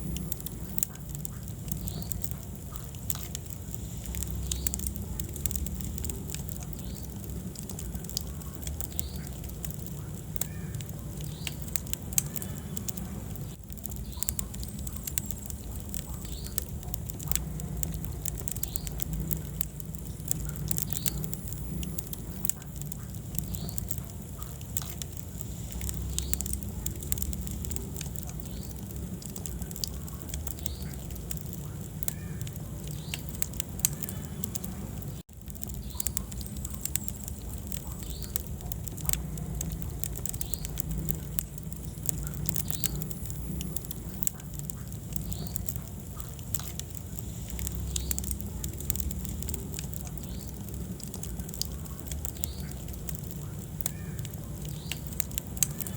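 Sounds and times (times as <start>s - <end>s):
fireplace flames rumbling: 0.0s - 55.9s
wood fire crackling and popping: 0.0s - 55.9s.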